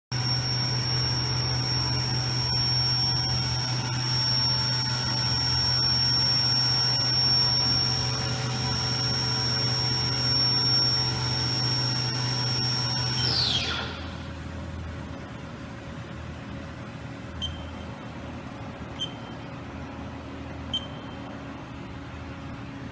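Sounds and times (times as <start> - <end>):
machine spindle whining: 0.2 - 14.4.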